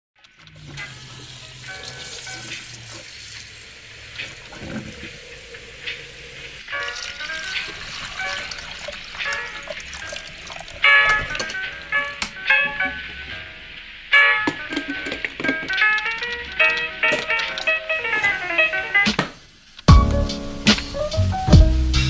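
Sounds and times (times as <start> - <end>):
hissing noise wash: 0.5 - 14.3
rhythmic melodic intro music: 6.5 - 19.2, 19.8 - 22.0.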